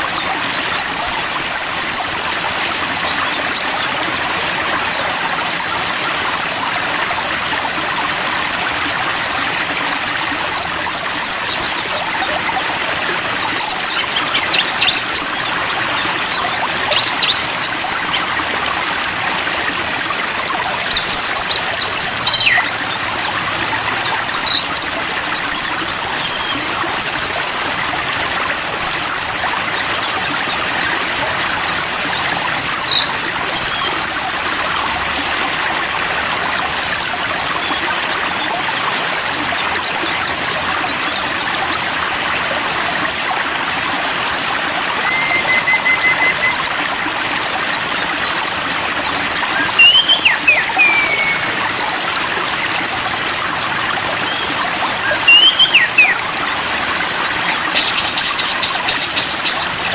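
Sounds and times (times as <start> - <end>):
stream water running: 0.0 - 59.9
songbird chirping: 49.3 - 51.5, 54.3 - 56.2.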